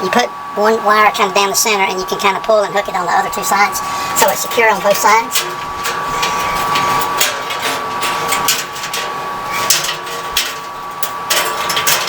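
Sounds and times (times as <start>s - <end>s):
light metallic clicks and rattles: 4.3s - 12.0s.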